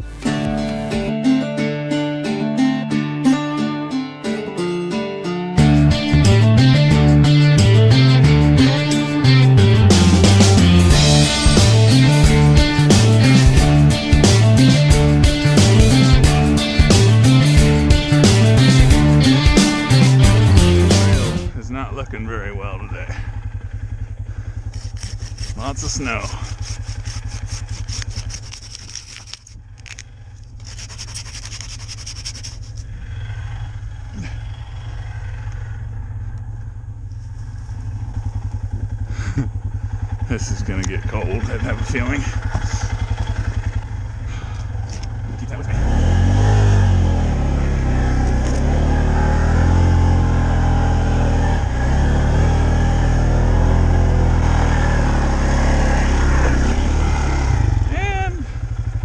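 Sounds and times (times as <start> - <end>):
vehicle engine running: 5.6 - 59.0
rapid scraping ticks: 24.6 - 33.9.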